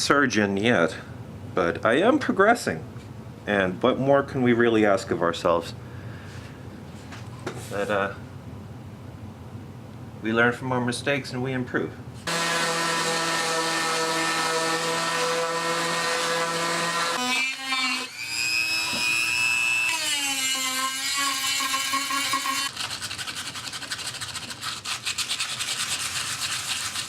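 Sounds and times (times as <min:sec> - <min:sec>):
electric router cutting wood: 0:12.3 - 0:22.7
rhythmic rubbing on wood: 0:22.2 - 0:27.0.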